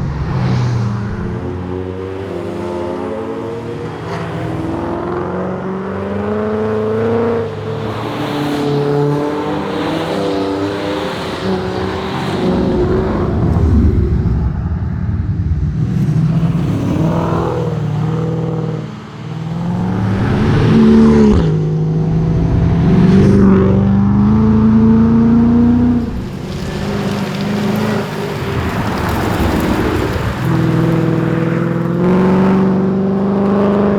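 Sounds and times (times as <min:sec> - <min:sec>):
car engine revving hard: 0:15.7 - 0:33.9.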